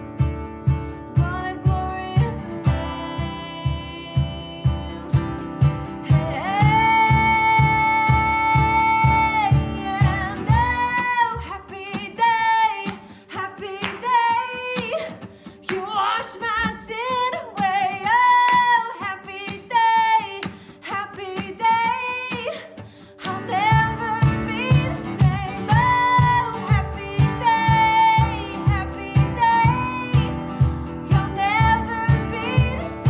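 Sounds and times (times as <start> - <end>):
guitar: 0.0 - 33.0
lead singer singing: 1.2 - 5.4, 6.0 - 33.0.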